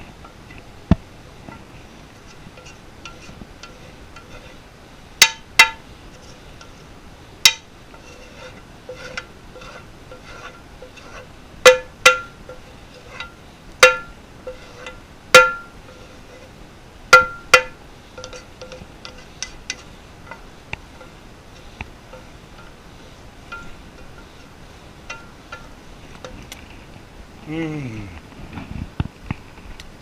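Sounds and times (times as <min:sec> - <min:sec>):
spoon knocking against dish: 0:11.7 - 0:12.4, 0:13.2 - 0:14.1, 0:15.4 - 0:15.7.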